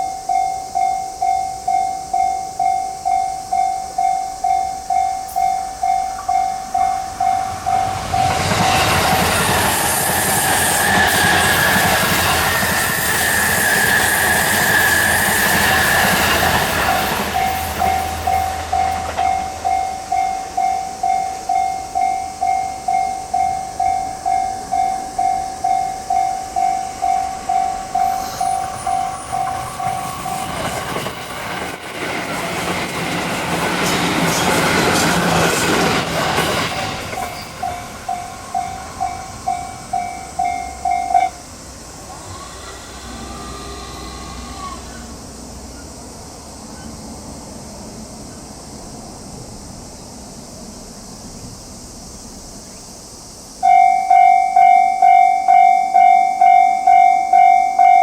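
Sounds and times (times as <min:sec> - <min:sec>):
level crossing warning bell: 0:00.0 - 0:09.2, 0:15.5 - 0:31.1, 0:36.8 - 0:41.5, 0:53.6 - 0:58.0
trains running past: 0:00.0 - 0:58.0.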